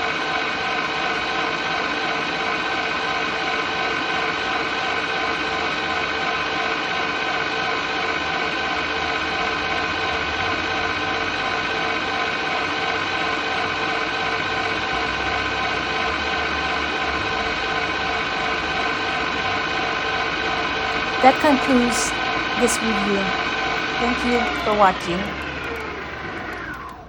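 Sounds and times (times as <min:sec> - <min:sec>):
stand mixer motor whirring: 0:25.3 - 0:27.0.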